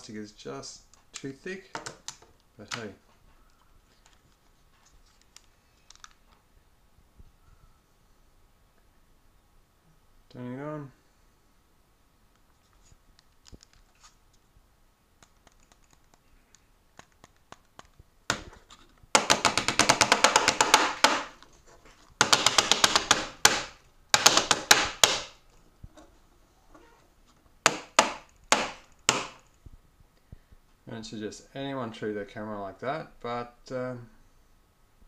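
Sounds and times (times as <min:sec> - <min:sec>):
rapid knocking on camera: 0:19.1 - 0:21.3
sharp knocks: 0:19.2 - 0:21.4, 0:22.2 - 0:25.4, 0:27.6 - 0:29.5.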